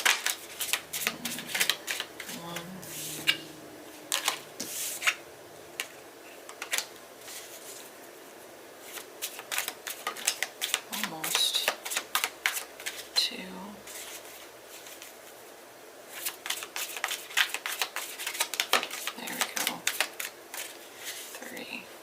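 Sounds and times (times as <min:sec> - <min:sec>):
cards being shuffled: 0:00.0 - 0:03.4, 0:04.1 - 0:05.2, 0:08.8 - 0:13.1, 0:16.1 - 0:21.6.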